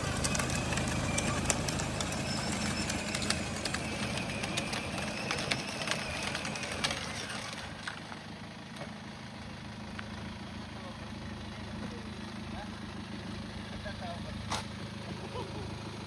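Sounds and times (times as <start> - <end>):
electric ride-on car motor hum: 0.0 - 10.7.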